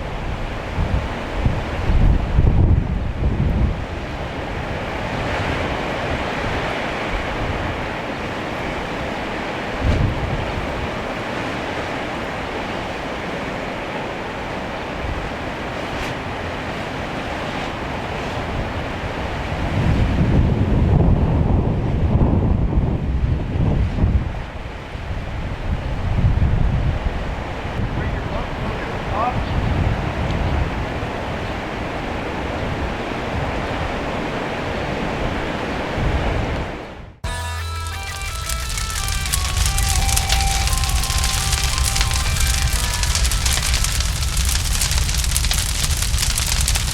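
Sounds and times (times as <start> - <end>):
wind buffeting microphone: 0.0 - 37.2, 38.5 - 46.9
floodwater rushing: 37.8 - 46.9.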